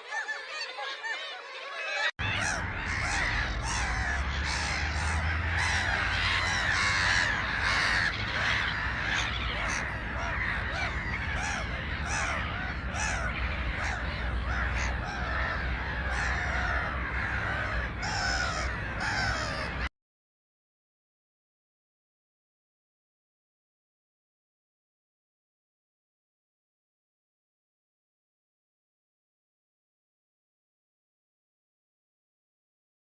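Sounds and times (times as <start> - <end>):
flock of birds calling: 0.0 - 19.9
low background rumble: 2.2 - 19.9.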